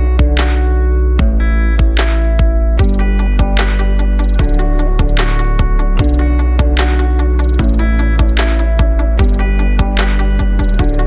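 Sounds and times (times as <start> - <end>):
backing track with drums: 1.2 - 11.0.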